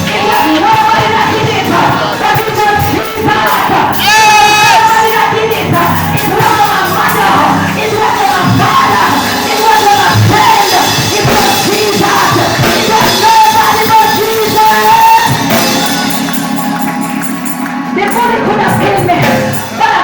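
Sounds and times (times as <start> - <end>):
church praise music: 0.0 - 20.0
people singing and shouting: 0.0 - 20.0.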